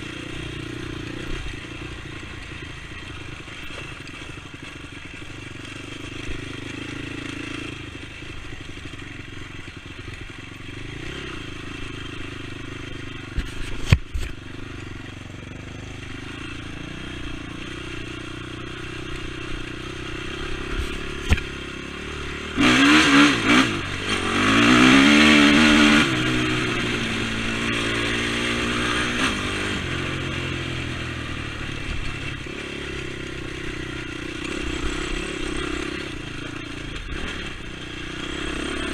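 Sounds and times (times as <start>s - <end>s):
atv engine running: 0.0s - 38.9s.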